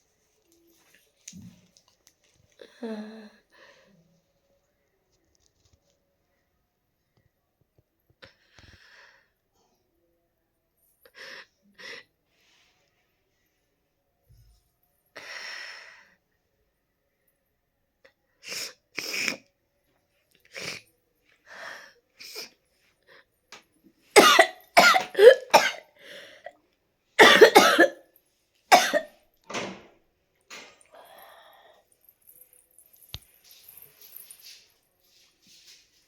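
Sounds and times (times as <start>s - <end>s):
person coughing: 24.2s - 25.8s, 27.2s - 28.0s, 28.7s - 29.1s.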